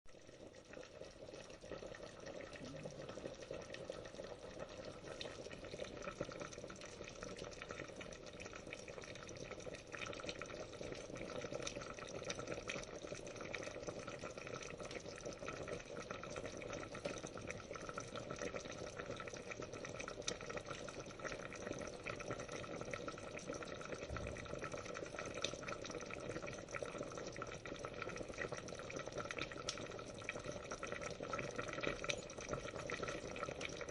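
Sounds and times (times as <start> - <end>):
water boiling in a pot: 0.1 - 33.9.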